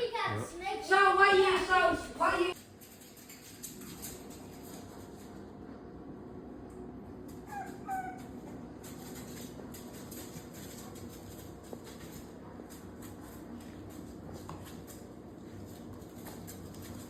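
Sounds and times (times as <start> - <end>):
shuffling sounds: 8.9 - 17.0.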